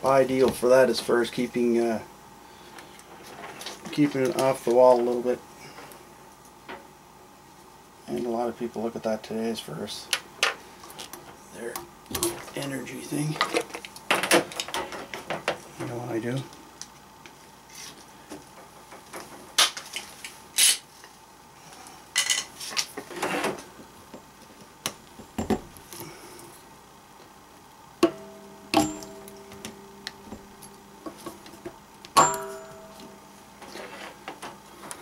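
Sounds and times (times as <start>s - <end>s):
ringing metal clanks: 28.1s - 29.5s, 32.2s - 33.2s.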